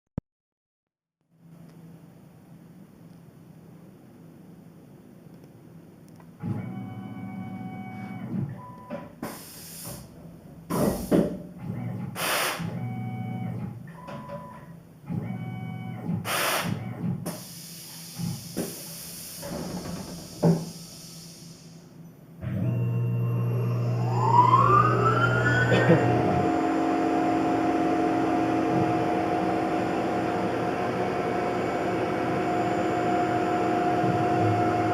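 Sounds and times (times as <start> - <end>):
hissing air blasts: 9.2 - 10.1, 12.2 - 12.7, 16.2 - 22.0
steady low hum: 20.8 - 34.9
motors whining: 22.4 - 34.9.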